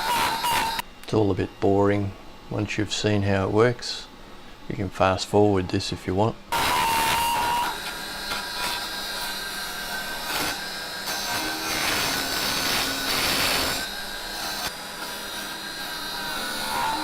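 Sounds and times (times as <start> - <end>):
wood lathe motor whine: 0.0 - 0.8, 6.5 - 17.0.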